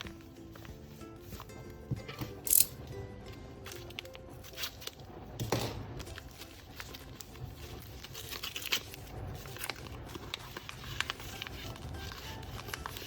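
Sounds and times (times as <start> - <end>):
paper rustling and crinkling: 0.0 - 2.4, 3.3 - 13.0.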